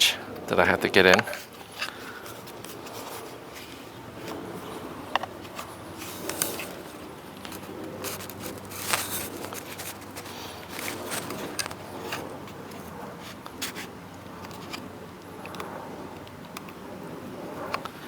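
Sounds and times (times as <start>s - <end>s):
rubber and plastic scraping: 1.0s - 15.8s.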